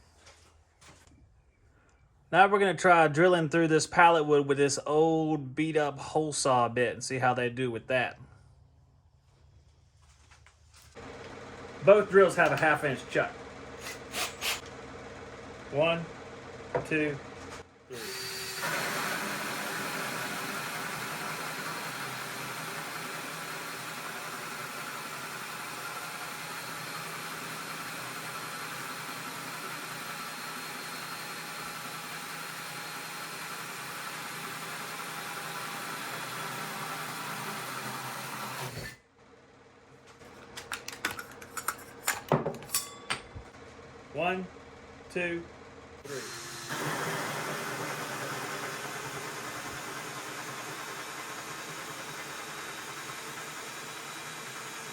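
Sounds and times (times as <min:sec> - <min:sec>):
hole saw rasping through wood: 0:13.8 - 0:14.7, 0:18.0 - 0:39.0, 0:46.1 - 0:54.9
drill motor whine: 0:17.9 - 0:39.0, 0:46.0 - 0:54.9
knocks and clicks of handling: 0:40.1 - 0:43.6.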